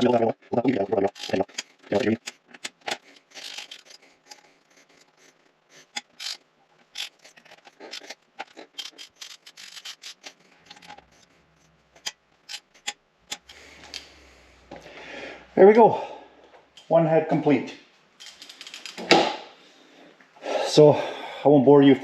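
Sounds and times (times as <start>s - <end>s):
ratchet wrench clicking: 1.1s - 4.4s, 5.8s - 8.1s, 8.8s - 14.0s, 18.2s - 19.0s.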